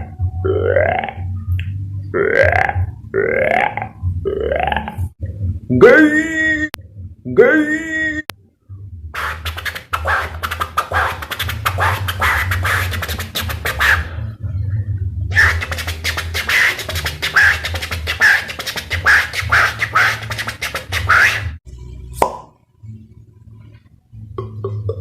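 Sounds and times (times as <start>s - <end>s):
steady low bass: 0.0s - 7.8s, 8.4s - 9.2s, 14.1s - 15.4s
beatboxed vocal scratching: 2.2s - 5.1s, 9.2s - 14.2s, 15.3s - 21.6s.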